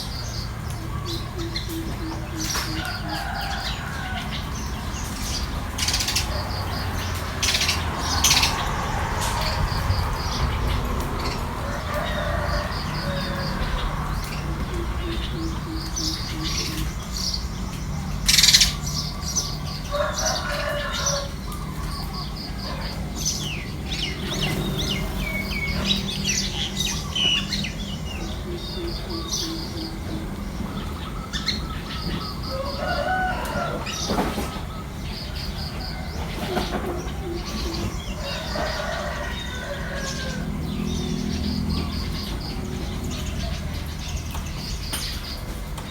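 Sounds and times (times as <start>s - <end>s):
chickens clucking: 0.0s - 45.9s
small birds chirping: 0.0s - 45.9s
steady low rumble: 4.4s - 19.9s.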